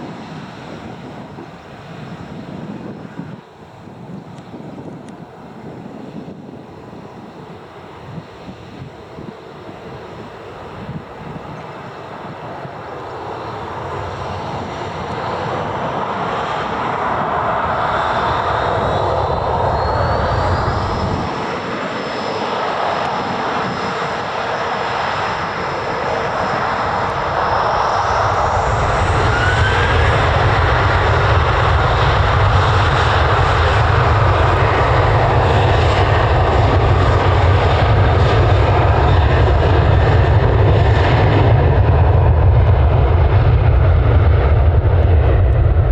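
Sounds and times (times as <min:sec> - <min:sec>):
aircraft engines running: 0:00.0 - 0:45.9
deep rumble: 0:25.8 - 0:45.9.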